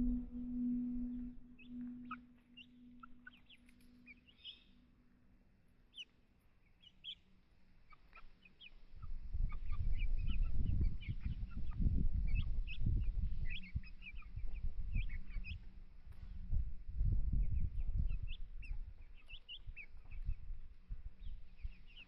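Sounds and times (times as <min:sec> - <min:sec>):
low ringing tone: 0:00.0 - 0:04.4
birds chirping: 0:00.0 - 0:04.8.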